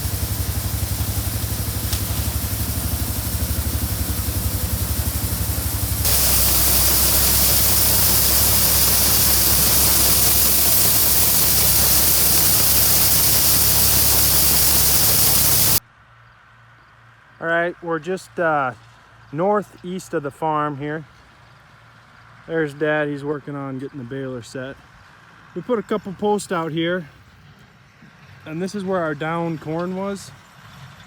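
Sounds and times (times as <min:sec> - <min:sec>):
combine engine rumble: 0:00.0 - 0:15.8
loud rushing hiss: 0:00.0 - 0:15.8.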